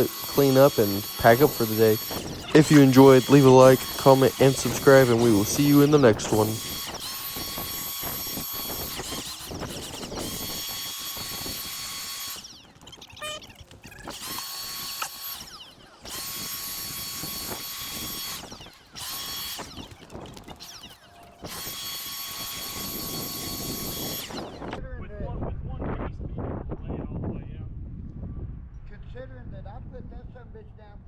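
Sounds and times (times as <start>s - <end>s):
leaf blower motor whining: 0.0s - 24.8s.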